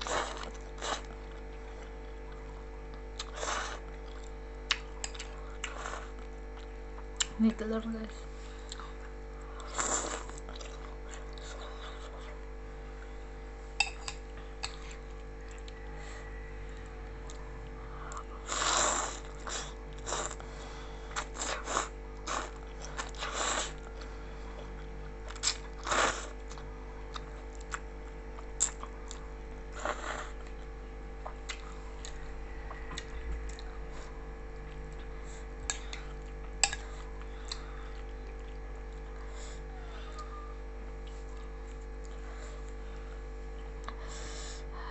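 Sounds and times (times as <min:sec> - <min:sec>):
person chewing noodles: 0:00.0 - 0:07.4, 0:08.4 - 0:44.7
electrical hum: 0:00.0 - 0:44.9
noodle slurps: 0:18.4 - 0:20.4.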